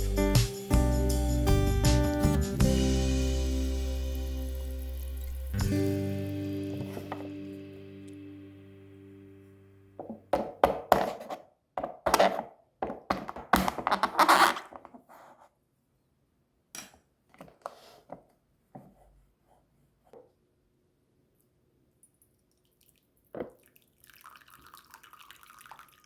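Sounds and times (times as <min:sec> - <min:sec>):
background music: 0:00.0 - 0:10.0
containers and utensils clattering: 0:04.9 - 0:07.4.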